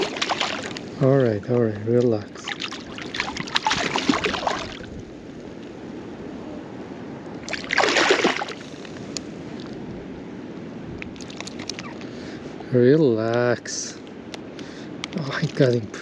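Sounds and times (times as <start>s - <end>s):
fish splashing in water: 0.0s - 0.9s, 2.4s - 4.9s, 7.4s - 8.7s
water washing: 0.0s - 5.0s, 7.4s - 8.9s.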